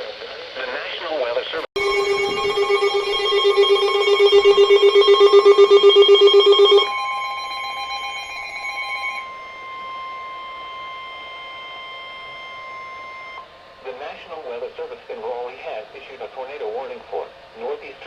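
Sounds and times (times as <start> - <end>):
rapidly pulsing alert tone: 1.8 - 13.4
radio alarm: 1.8 - 13.5
steady single-pitch alarm tone: 1.8 - 13.8.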